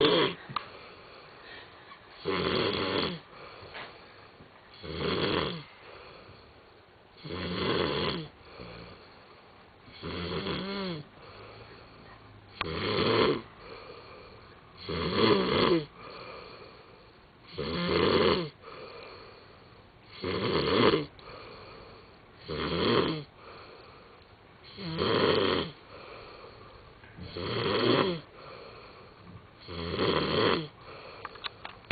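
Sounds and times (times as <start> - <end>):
man snoring heavily: 0.0 - 0.4, 2.2 - 3.6, 4.8 - 6.3, 7.2 - 9.2, 9.9 - 24.0, 24.6 - 31.2
quiet breathing: 0.0 - 2.4, 3.2 - 4.9, 5.6 - 7.3, 8.2 - 12.7, 13.4 - 14.9, 15.8 - 17.6, 18.5 - 20.2, 21.0 - 22.6, 23.2 - 25.0, 25.7 - 30.0, 30.7 - 31.9.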